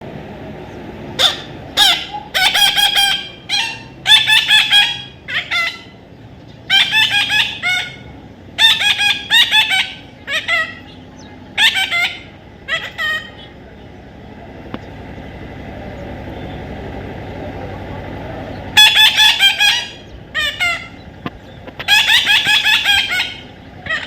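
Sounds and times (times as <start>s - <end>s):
parrot squawking: 1.2s - 6.0s, 6.7s - 13.6s, 18.7s - 24.0s.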